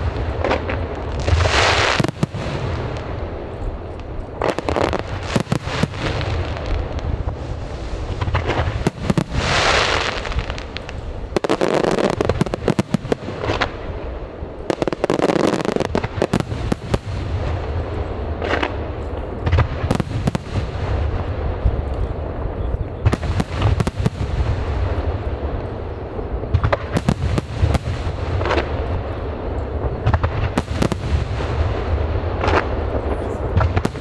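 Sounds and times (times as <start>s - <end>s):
fireworks bangs and crackles: 0.0s - 34.0s
low rumble of fireworks shells: 0.0s - 34.0s.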